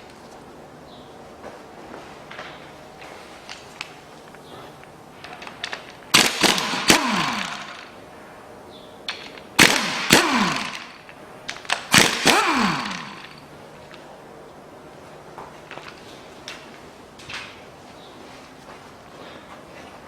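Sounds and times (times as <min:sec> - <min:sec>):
impact wrench bursts: 0:05.4 - 0:08.0, 0:09.1 - 0:14.0.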